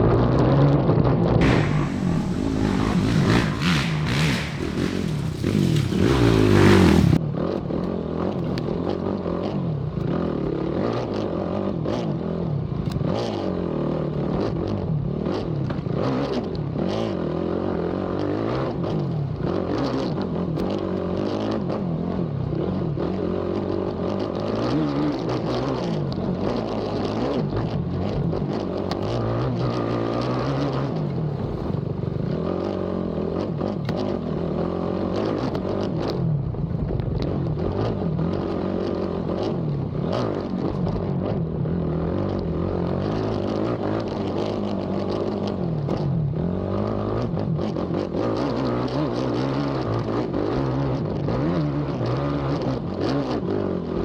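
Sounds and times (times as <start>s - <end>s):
loud rushing noise: 1.4s - 7.2s
quad bike engine revving: 1.4s - 7.3s.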